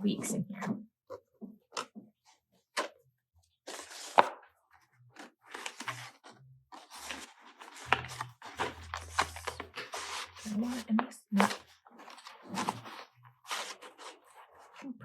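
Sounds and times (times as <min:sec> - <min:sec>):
paper pages rustling: 0:03.6 - 0:15.0
faint bass guitar notes: 0:07.8 - 0:10.9.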